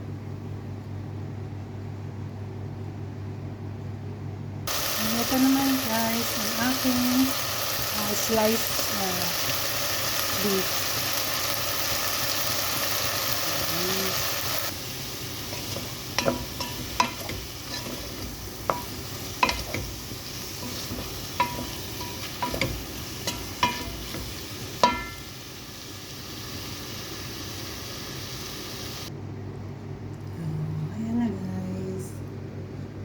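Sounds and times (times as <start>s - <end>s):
beef sizzling in a pan: 4.7s - 29.1s
utensil clacking against pan: 15.6s - 20.0s, 20.6s - 25.2s.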